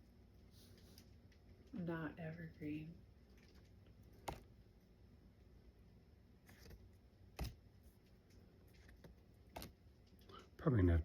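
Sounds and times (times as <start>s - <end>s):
trading cards tapping and clicking: 4.2s - 4.5s.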